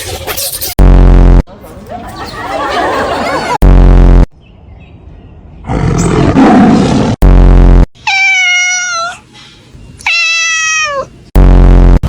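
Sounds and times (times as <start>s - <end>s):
loud low buzzing burst: 0.8s - 1.5s, 3.6s - 4.3s, 7.2s - 7.9s, 11.3s - 12.0s
cat meowing: 8.0s - 9.2s, 10.0s - 11.2s.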